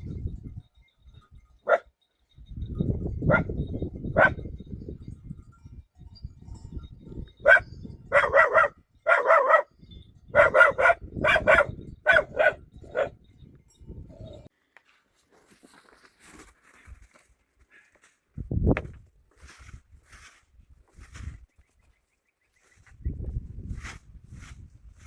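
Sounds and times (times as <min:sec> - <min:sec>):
rustling: 0:14.6 - 0:18.3.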